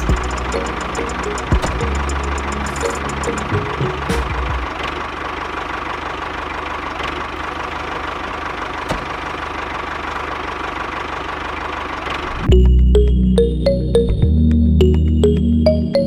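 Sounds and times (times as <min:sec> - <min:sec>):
loud music: 0:00.0 - 0:04.8
small tractor motor chugging: 0:00.0 - 0:12.5.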